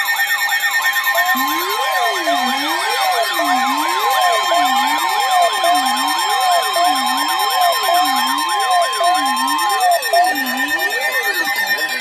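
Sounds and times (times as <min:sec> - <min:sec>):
electronic siren wailing: 0:00.0 - 0:12.0
steady high alert tone: 0:01.1 - 0:12.0.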